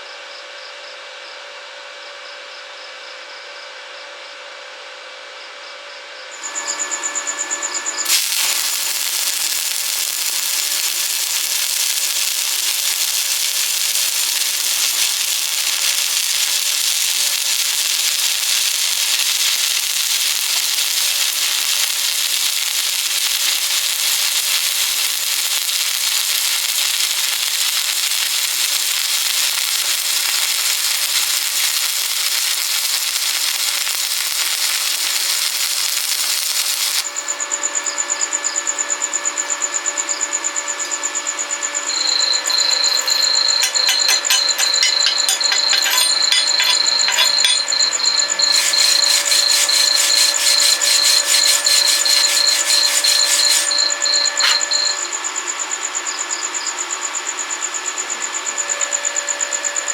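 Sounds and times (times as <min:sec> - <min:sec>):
welding arc hissing: 0:06.4 - 0:37.0, 0:41.9 - 0:55.0.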